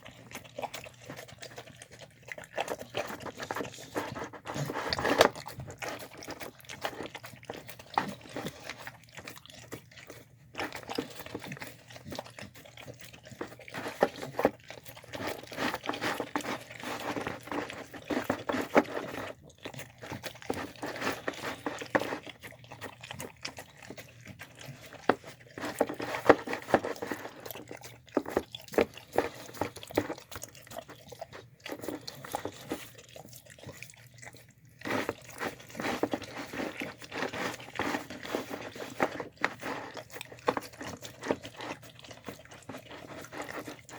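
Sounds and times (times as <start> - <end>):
dog chewing and crunching: 0.0 - 43.9.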